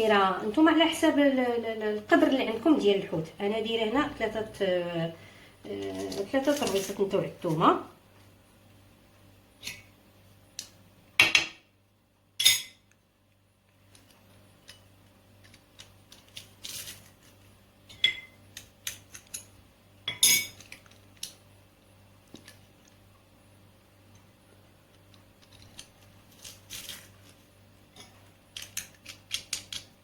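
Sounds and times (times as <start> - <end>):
utensils clattering: 5.7 - 7.1
utensils clinking against dishes: 12.4 - 12.8, 20.1 - 20.7.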